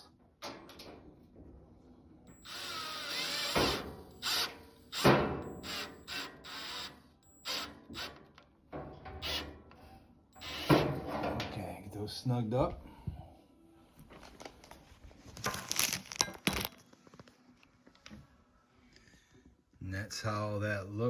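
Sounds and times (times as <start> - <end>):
power driver driving screws into steel: 2.3 - 8.3, 9.2 - 9.6, 10.4 - 11.0.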